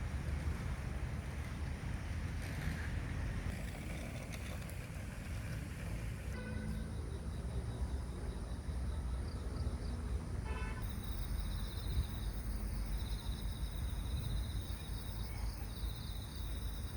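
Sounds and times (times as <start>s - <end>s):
car horn toot: 6.4s - 6.9s, 10.4s - 11.0s
crickets trilling: 6.5s - 16.9s.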